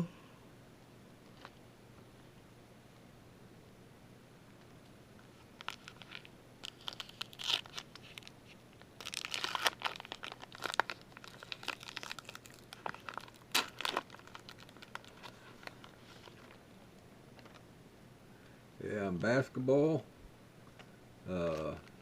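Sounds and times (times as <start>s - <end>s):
foil wrapper crinkling and tearing: 5.4s - 16.6s, 21.4s - 22.0s.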